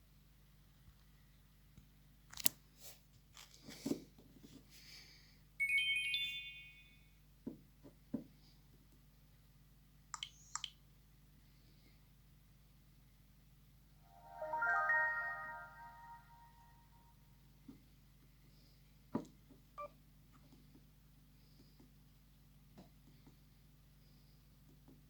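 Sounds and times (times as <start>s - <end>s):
bright electronic chime: 5.6s - 7.0s, 14.1s - 16.9s.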